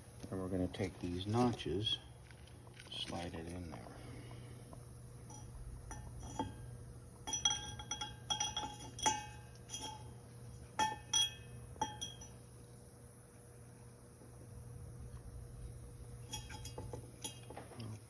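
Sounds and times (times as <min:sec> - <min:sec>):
metal hub clinking: 0:05.2 - 0:12.5, 0:16.2 - 0:18.0.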